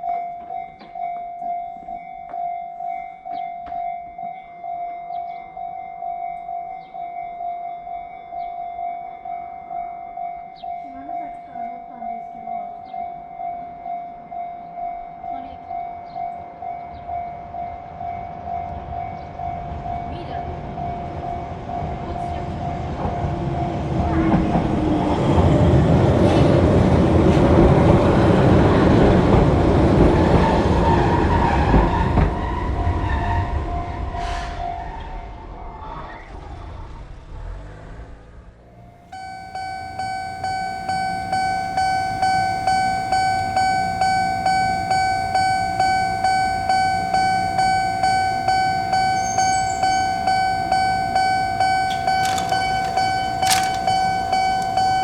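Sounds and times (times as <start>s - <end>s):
level crossing warning bell: 0.0s - 31.8s, 39.0s - 55.0s
train passing: 14.7s - 38.0s, 38.7s - 55.0s.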